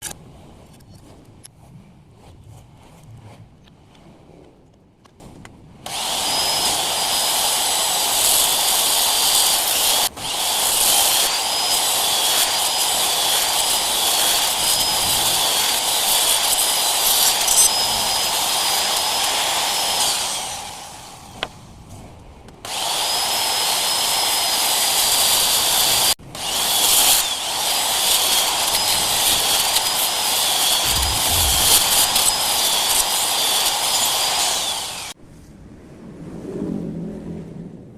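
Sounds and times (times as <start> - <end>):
power tool whining on wood: 5.8 - 22.0, 22.6 - 35.2.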